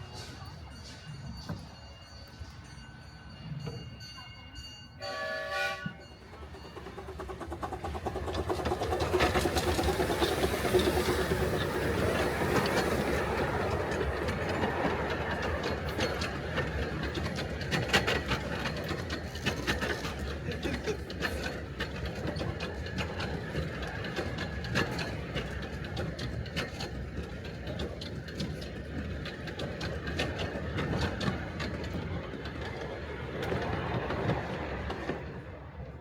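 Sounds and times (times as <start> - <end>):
train whistle blast: 5.0 - 6.1
train wheels clicking over rail joints: 5.8 - 36.0.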